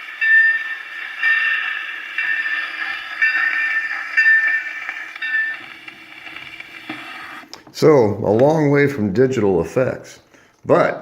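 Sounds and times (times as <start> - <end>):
ringing tone struck: 0.0 - 7.2
train recording on phonograph: 0.0 - 9.7.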